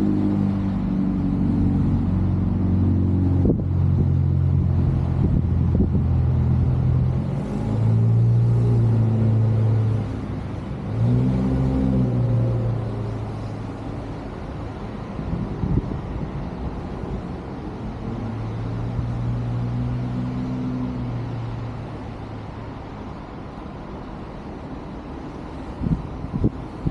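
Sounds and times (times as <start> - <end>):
vehicle engine humming: 0.0 - 26.9.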